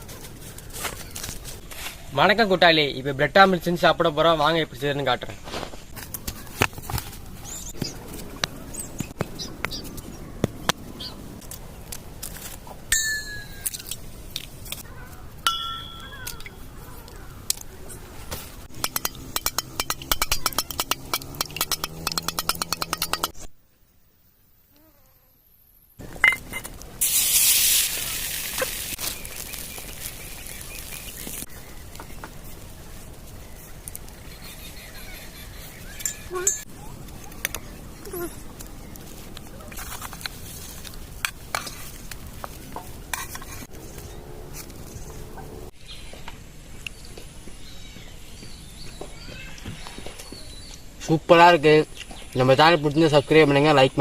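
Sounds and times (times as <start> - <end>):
kitchen utensils clicking and knocking: 18.7 - 23.4
food sizzling in a pan: 27.0 - 32.2.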